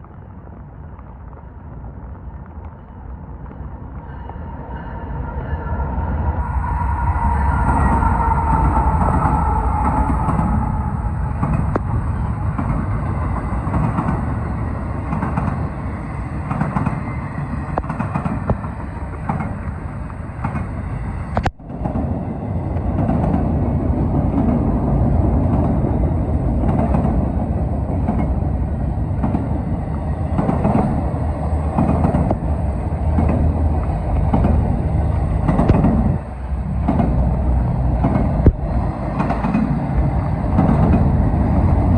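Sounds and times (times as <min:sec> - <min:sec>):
rain on microphone: 0:00.0 - 0:03.7
freight train rumbling past: 0:01.9 - 0:41.9
wheels clacking over rail joints: 0:11.2 - 0:20.8, 0:21.4 - 0:41.9.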